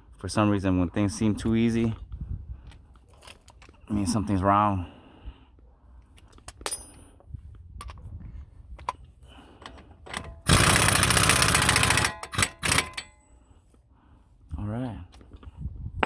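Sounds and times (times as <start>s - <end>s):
impact wrench hammering: 10.1s - 13.1s.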